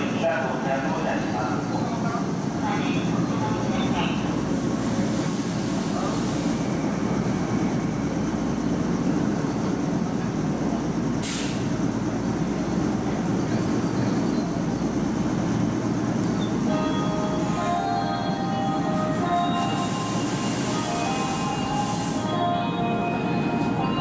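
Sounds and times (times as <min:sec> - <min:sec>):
electric train rumbling: 0:00.0 - 0:24.0
air hiss: 0:11.2 - 0:11.8, 0:19.0 - 0:22.4.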